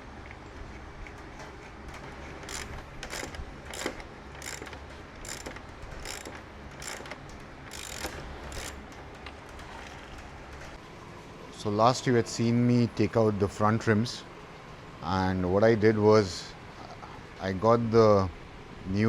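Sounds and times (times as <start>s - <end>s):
ratchet wrench clicking: 0.7s - 8.8s.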